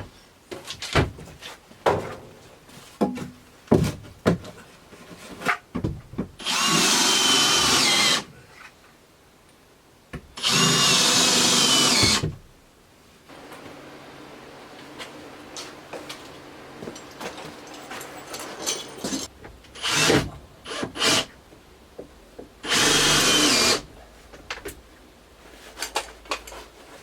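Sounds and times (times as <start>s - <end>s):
handling clicks and knocks: 15.0s - 19.6s.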